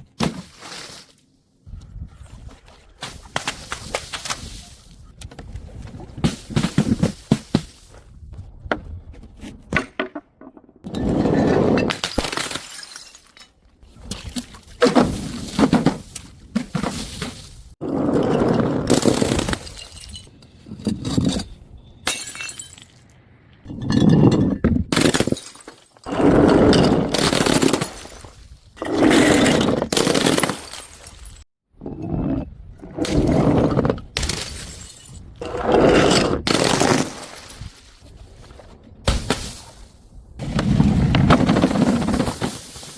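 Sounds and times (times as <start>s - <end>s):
glass bottles shattering: 11.8s - 13.6s, 18.9s - 20.4s, 22.0s - 23.0s, 29.4s - 31.4s, 34.2s - 35.3s.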